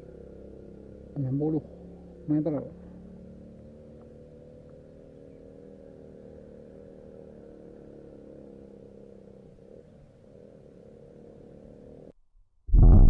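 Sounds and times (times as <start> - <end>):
faint ticks: 3.5 - 4.9.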